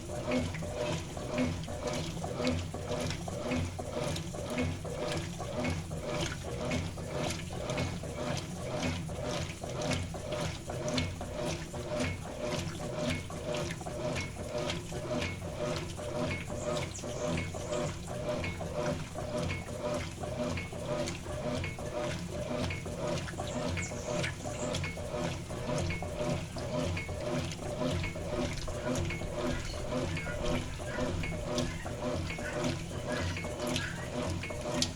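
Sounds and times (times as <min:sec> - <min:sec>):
motor hum: 0:00.0 - 0:34.9
washing machine agitator churning water: 0:00.0 - 0:34.9.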